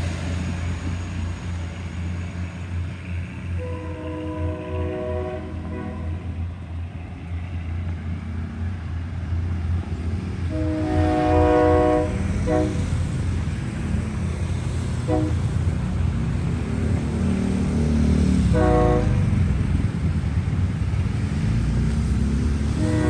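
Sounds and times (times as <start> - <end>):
low rumble of moving train: 0.0 - 23.0
locomotive air horn blasts: 3.6 - 6.4, 10.4 - 13.3, 14.8 - 15.9, 18.2 - 19.4, 22.7 - 23.0.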